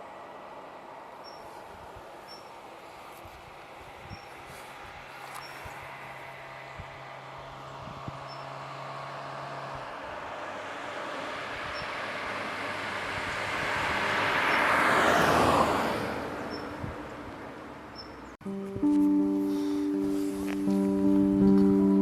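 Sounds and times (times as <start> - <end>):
road vehicle passing by: 0.0 - 22.0.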